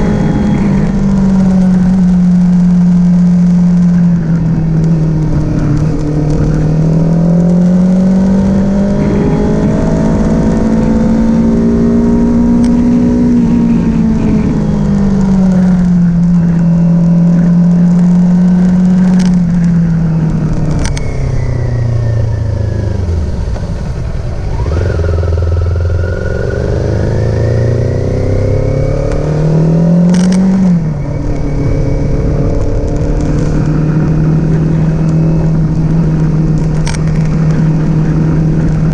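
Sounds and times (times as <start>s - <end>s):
motorcycle engine revving: 0.0s - 38.9s
sharp clicks: 36.6s - 37.6s.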